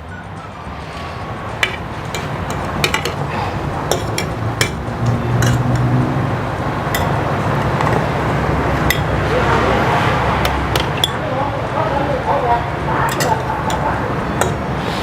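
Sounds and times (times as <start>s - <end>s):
utensils clinking against plate: 1.6s - 6.0s, 6.9s - 9.2s, 10.4s - 11.2s, 13.0s - 14.6s.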